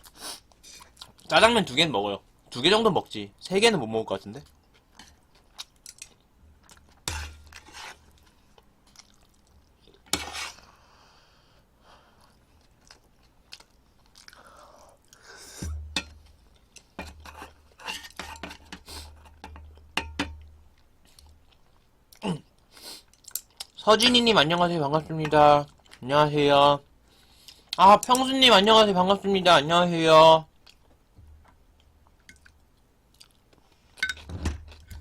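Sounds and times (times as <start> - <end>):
person chewing and eating: 4.6 - 10.1, 12.2 - 17.8, 30.6 - 35.0.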